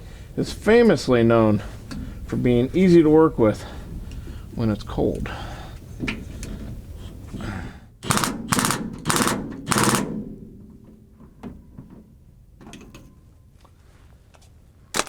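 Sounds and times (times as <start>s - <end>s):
power driver rapid hammering clicks: 8.0s - 10.4s.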